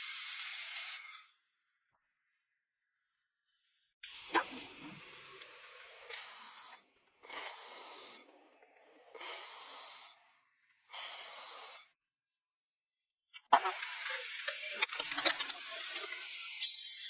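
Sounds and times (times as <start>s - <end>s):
hissing bursts: 0.0s - 1.4s, 6.0s - 8.3s, 9.1s - 10.2s, 10.9s - 12.0s, 15.8s - 17.0s.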